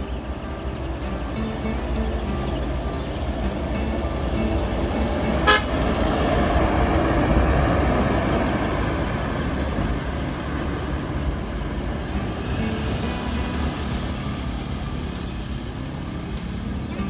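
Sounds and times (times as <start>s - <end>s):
bus engine rumbling: 0.0s - 17.0s
short bus horn toot: 5.2s - 6.4s.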